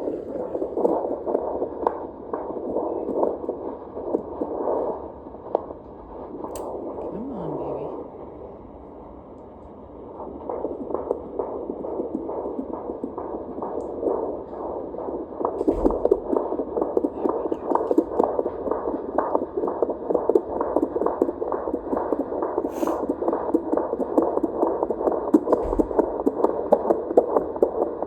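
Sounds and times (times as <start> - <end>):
fetal heartbeat through doppler speaker: 0.0 - 8.8, 9.8 - 28.0
knock: 15.6 - 16.2, 25.5 - 26.1.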